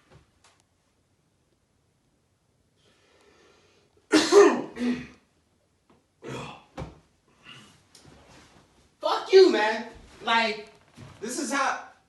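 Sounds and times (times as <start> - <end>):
person sneezing: 4.1 - 5.2, 6.2 - 6.7.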